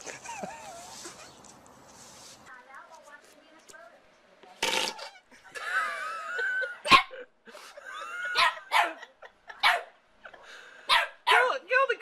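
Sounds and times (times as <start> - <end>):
dog barking sharply: 8.4 - 9.0, 9.6 - 9.9, 10.9 - 11.5.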